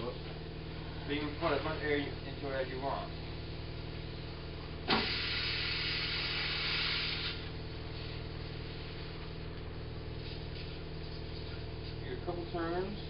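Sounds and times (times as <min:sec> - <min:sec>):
steady low hum: 0:00.0 - 0:13.0
compressed air hissing: 0:04.9 - 0:09.2.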